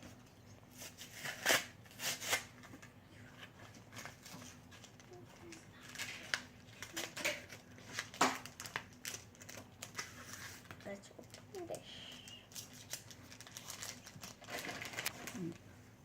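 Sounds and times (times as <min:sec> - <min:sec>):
card packaging crackling: 0:03.7 - 0:11.6, 0:12.5 - 0:15.5
sharp packaging snaps: 0:06.0 - 0:10.1.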